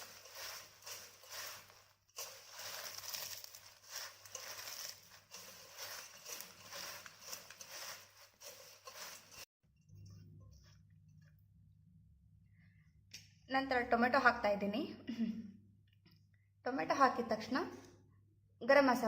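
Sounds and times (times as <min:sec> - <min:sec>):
dry crisp rustling in a bowl: 0:00.0 - 0:09.5.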